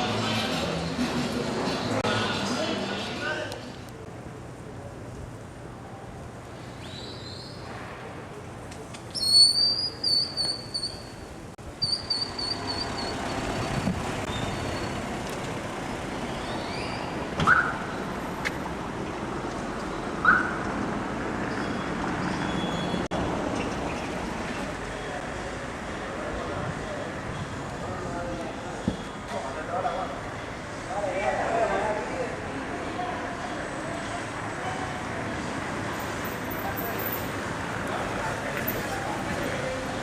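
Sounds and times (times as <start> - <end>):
traffic hum: 0.0 - 40.0
shrill trilling whistle: 9.2 - 11.1.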